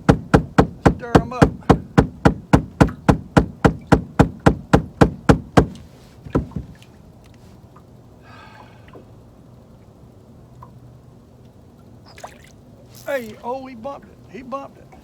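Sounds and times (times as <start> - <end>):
rapid knocking on boat: 0.0 - 6.9.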